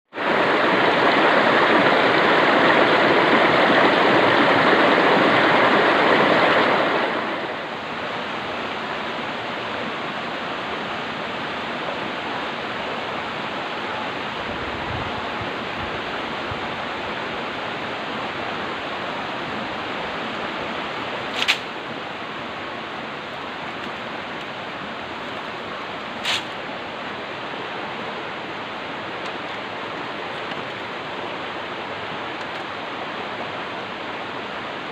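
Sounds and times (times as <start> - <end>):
stream water rushing: 0.1 - 34.9.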